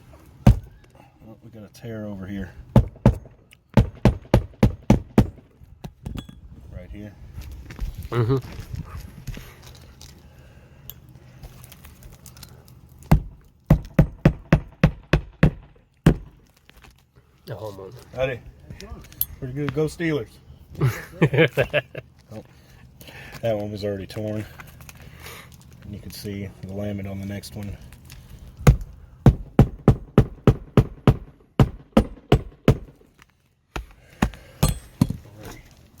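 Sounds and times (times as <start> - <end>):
hammer blows on roof: 0.4 - 0.8, 2.7 - 5.5, 13.1 - 16.4, 28.6 - 33.0.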